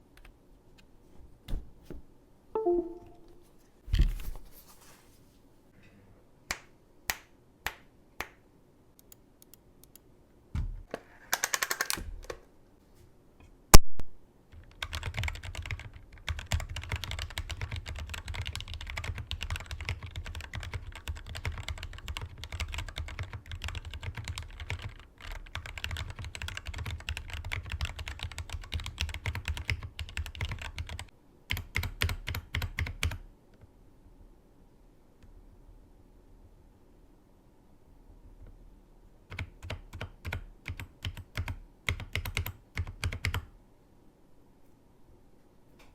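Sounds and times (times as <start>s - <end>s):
mechanical keyboard typing: 11.4s - 12.0s, 14.6s - 33.2s, 39.3s - 43.5s.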